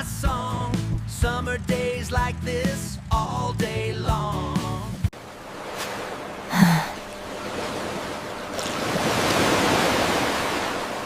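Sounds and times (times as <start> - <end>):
ocean surf on a beach: 5.2 - 11.0.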